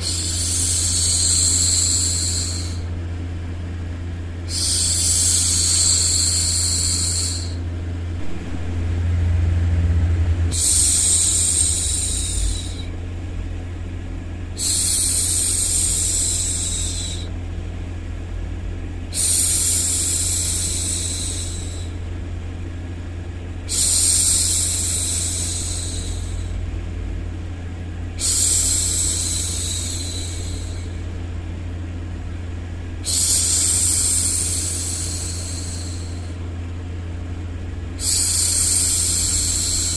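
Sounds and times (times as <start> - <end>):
white noise with low hum: 0.0 - 39.9
woman shushing: 10.5 - 13.0, 28.2 - 30.9.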